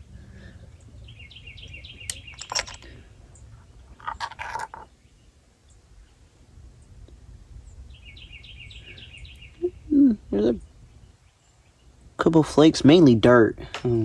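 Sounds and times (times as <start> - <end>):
handling noise clatter: 2.1 - 4.9.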